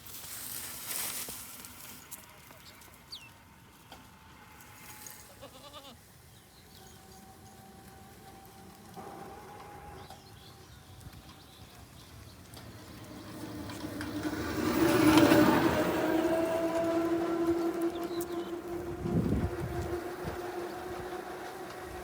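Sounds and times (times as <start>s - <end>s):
goat bleating: 5.3s - 6.0s
faint steady tones: 6.1s - 22.0s.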